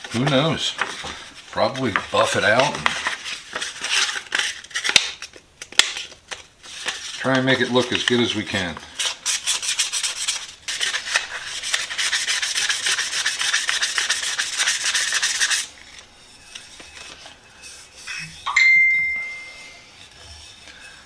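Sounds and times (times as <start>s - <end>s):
sandpaper rubbing on metal: 9.0s - 18.4s
metallic ding: 18.4s - 19.8s.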